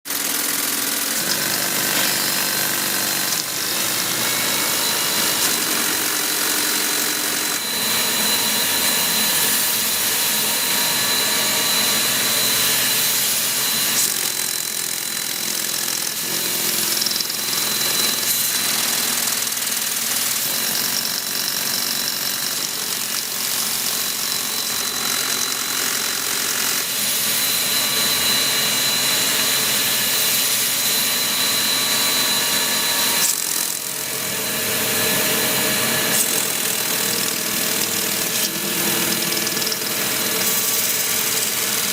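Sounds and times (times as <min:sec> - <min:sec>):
thin high whine: 0:03.1 - 0:14.0.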